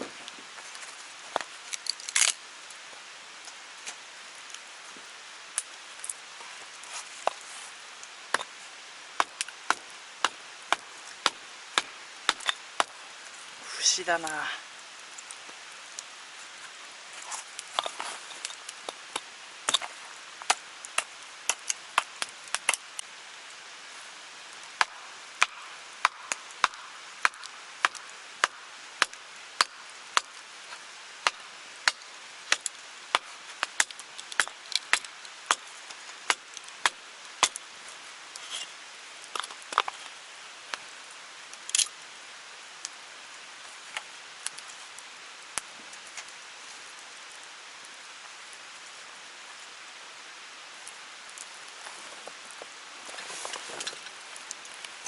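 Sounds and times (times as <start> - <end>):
stream water rushing: 0.0 - 55.0
blade chopping wood: 9.2 - 13.0, 24.8 - 30.3.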